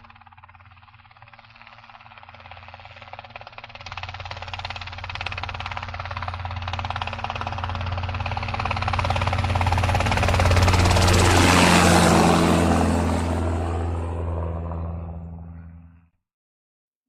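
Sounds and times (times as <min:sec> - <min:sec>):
aircraft passing with chopping: 0:00.0 - 0:16.1.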